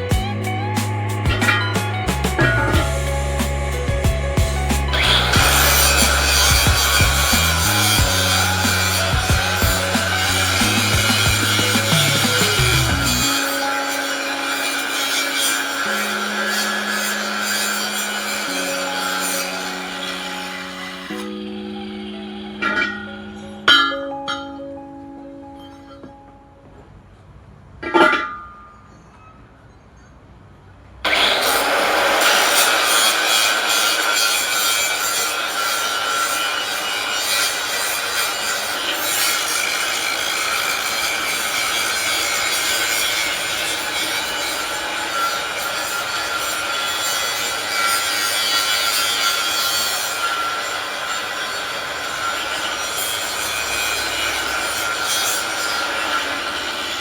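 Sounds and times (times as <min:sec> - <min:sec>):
power tool rasping metal: 0:02.6 - 0:21.4, 0:31.1 - 0:57.0.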